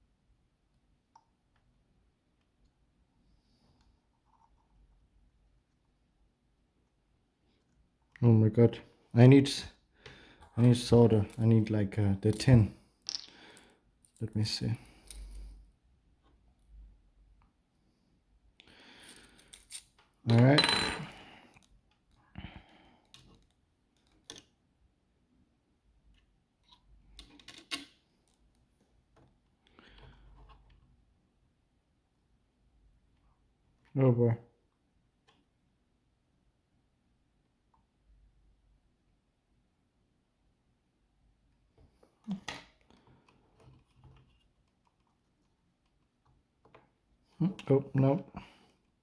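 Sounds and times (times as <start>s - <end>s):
small objects clacking on work surface: 13.1s - 14.2s.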